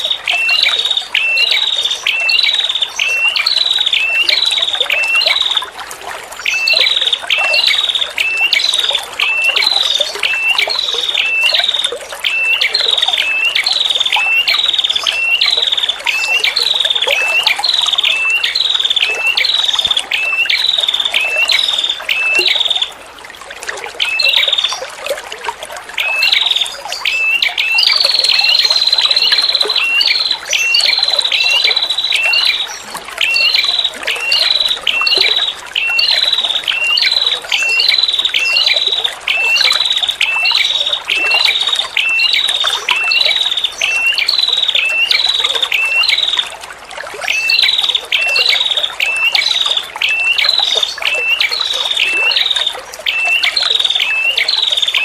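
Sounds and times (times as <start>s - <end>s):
trickling water: 0.0s - 55.0s.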